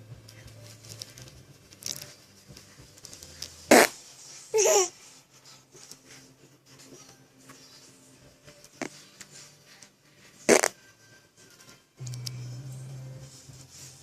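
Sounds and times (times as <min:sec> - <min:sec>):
fart sound: 0:03.7 - 0:04.0, 0:10.5 - 0:10.8
baby laughing: 0:04.5 - 0:05.0.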